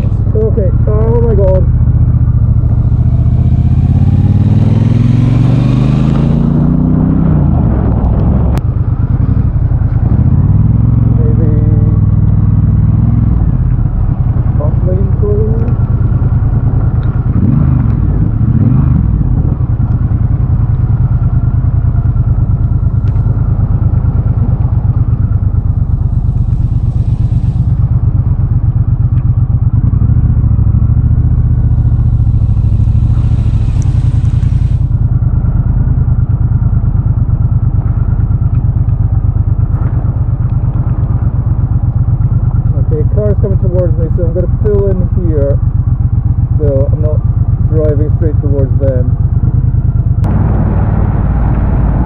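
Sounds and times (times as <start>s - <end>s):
motorcycle engine running: 0.0s - 52.0s
brief hiss: 32.5s - 34.9s.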